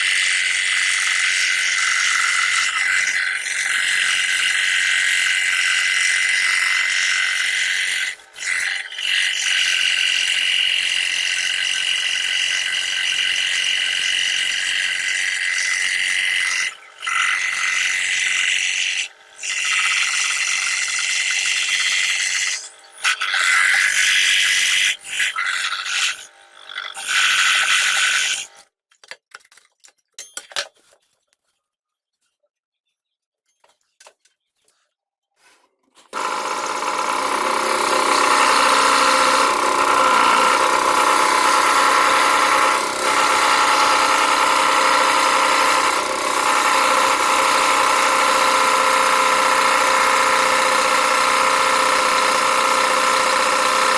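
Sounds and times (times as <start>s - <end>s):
scroll saw cutting plywood: 0.0s - 28.7s, 36.0s - 53.9s.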